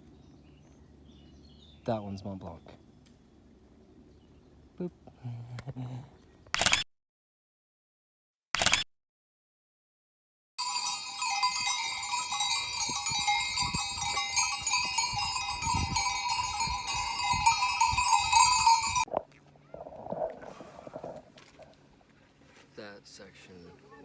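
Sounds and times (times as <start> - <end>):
livestock bells clanging: 10.6 - 19.1.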